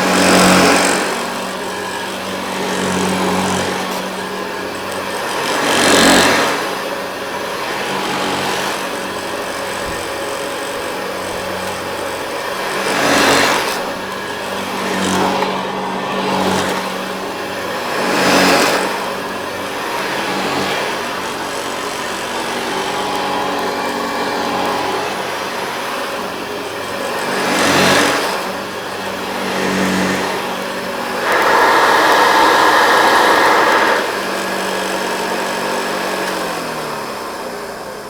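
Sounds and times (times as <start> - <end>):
vacuum cleaner motor hum: 0.0 - 38.0.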